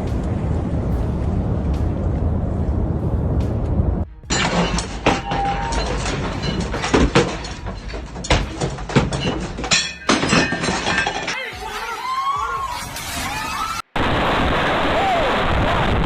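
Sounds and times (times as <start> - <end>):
steady rushing noise: 0.0 - 4.3
crashes and knocks: 4.3 - 11.4
things breaking: 4.3 - 11.4.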